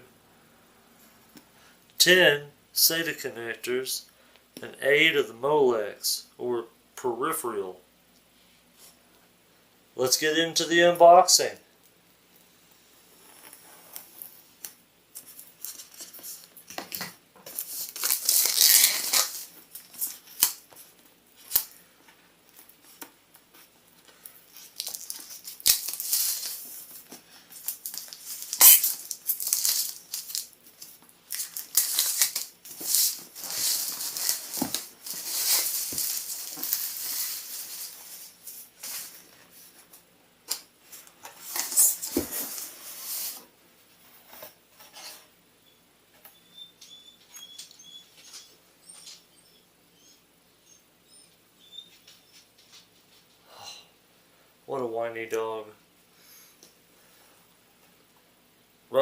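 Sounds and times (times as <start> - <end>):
cardboard packaging rustling: 15.2 - 21.8, 22.6 - 39.9, 40.9 - 43.5.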